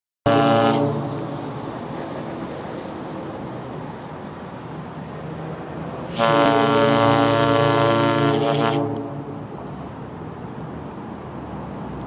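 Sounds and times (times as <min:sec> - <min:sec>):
locomotive horn blast: 0:00.2 - 0:01.5, 0:06.1 - 0:09.4.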